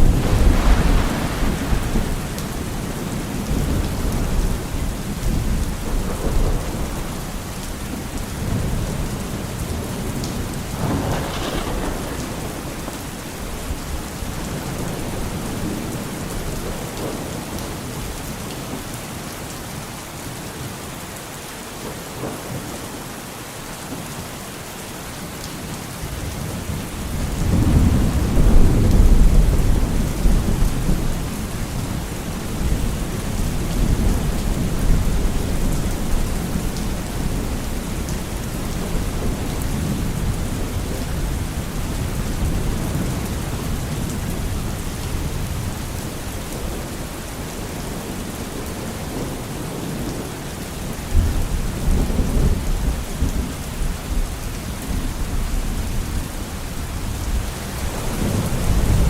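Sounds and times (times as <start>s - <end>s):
rolling thunder: 0.0s - 7.4s, 8.4s - 17.2s, 27.1s - 46.8s
heavy rain: 0.0s - 59.0s.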